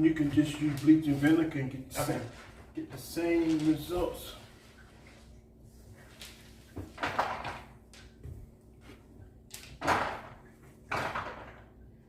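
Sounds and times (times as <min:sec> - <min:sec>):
rustling handling noise: 0:00.0 - 0:07.1.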